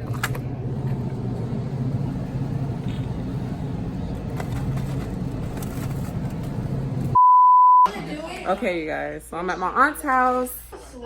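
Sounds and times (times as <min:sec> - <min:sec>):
car engine and road noise: 0:00.0 - 0:07.2.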